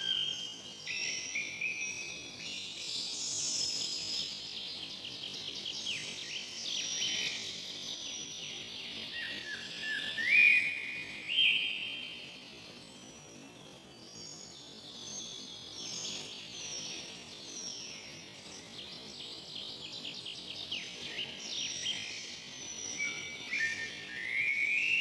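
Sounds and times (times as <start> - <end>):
songbirds chirping and singing: 13.6 - 25.0.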